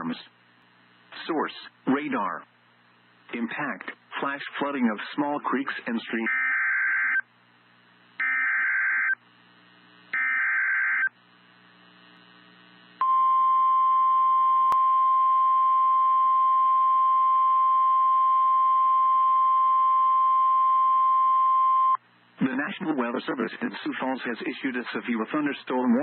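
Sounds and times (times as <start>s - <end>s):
steady warning alarm tone: 6.3s - 7.2s, 8.2s - 9.2s, 10.1s - 11.1s.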